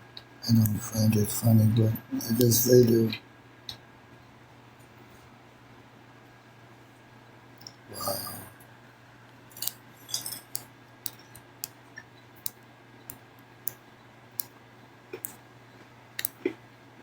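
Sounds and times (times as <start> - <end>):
faint low hum: 0.0 - 17.0
irregular sharp clicks: 16.2 - 16.4.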